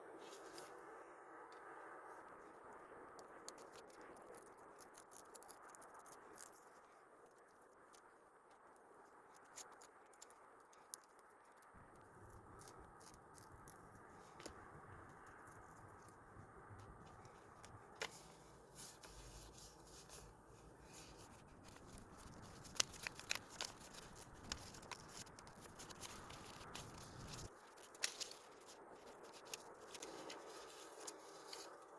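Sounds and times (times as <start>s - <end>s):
paper and stickers rustling: 16.8s - 31.9s.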